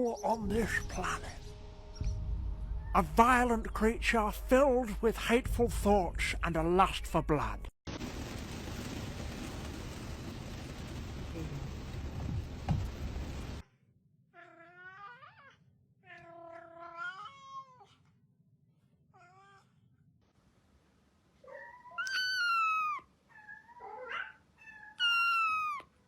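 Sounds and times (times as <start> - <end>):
cat meowing: 14.4 - 17.8, 22.0 - 23.0, 23.8 - 25.9.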